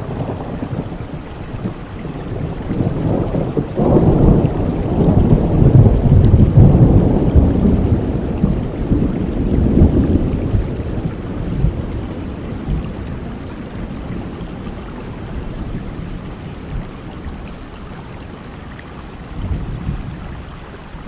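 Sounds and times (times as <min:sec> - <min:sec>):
thunder rumbling: 0:00.0 - 0:17.8, 0:19.4 - 0:20.5
steady rain: 0:00.0 - 0:21.0.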